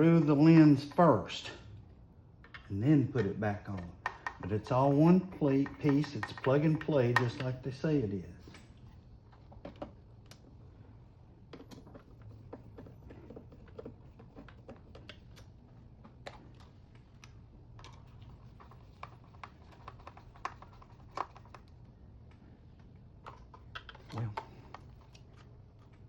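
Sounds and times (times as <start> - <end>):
plastic lens clicks and taps: 5.5 - 7.6.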